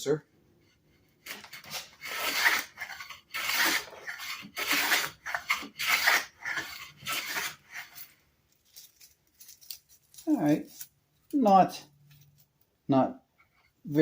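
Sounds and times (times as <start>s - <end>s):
hand plane rasping across wood: 1.2s - 8.1s.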